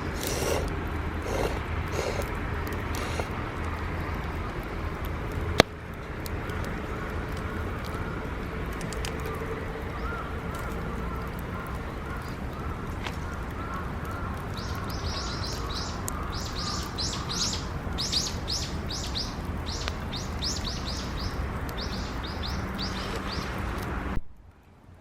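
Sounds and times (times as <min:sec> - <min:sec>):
faint clicks: 0:00.0 - 0:24.5
low background noise: 0:00.0 - 0:25.0
small bird chirping: 0:14.5 - 0:23.6.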